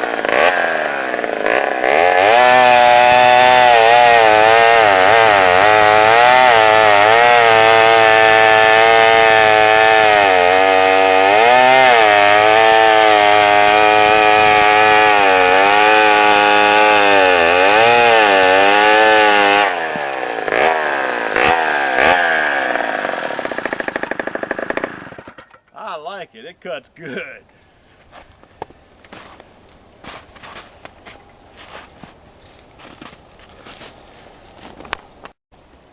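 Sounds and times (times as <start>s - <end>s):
chainsaw cutting wood: 0.0s - 25.7s.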